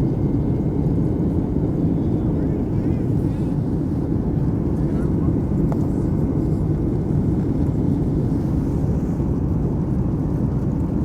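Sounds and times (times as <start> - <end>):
jet engines low rumble: 0.0 - 11.0.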